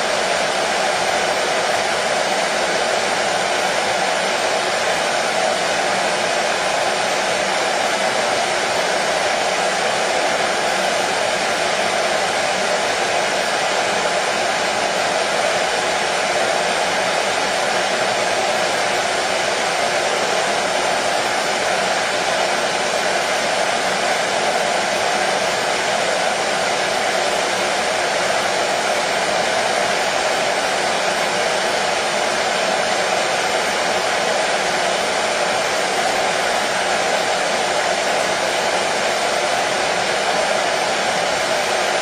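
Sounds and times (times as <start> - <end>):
hair dryer running: 0.0 - 42.0.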